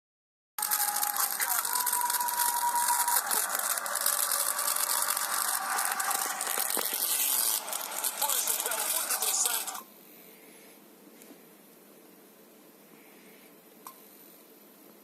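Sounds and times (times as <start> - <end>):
distorted tablet speaker audio: 0.6 - 2.3, 3.2 - 9.8.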